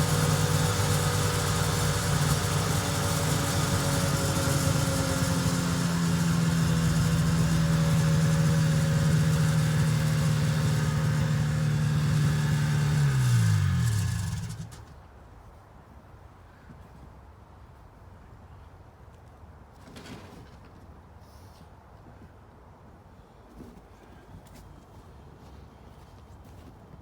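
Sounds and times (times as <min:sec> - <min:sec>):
snowmobile engine running: 0:00.0 - 0:14.8.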